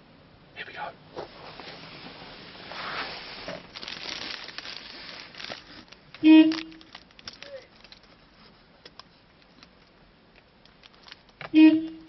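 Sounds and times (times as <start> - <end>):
low background noise: 0.0 - 12.0
van horn blast: 6.2 - 6.9, 11.5 - 12.0.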